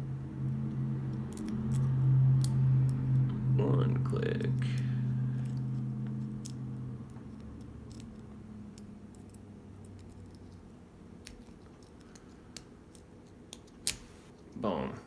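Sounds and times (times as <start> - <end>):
lock pick metallic clicks and scrapes: 1.1 - 3.3, 5.4 - 14.4.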